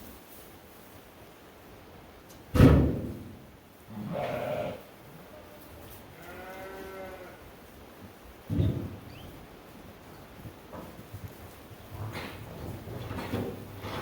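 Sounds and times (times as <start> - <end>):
sheep bleating: 4.0 - 4.9, 6.2 - 7.4.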